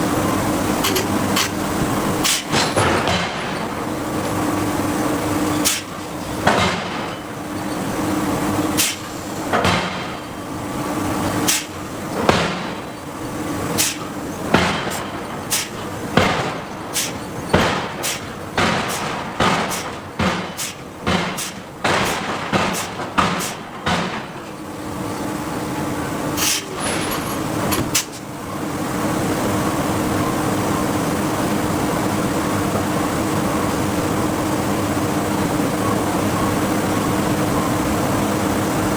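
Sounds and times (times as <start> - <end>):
forging hammer striking steel: 5.6 - 7.4, 8.8 - 10.4, 11.4 - 13.0, 13.7 - 24.5.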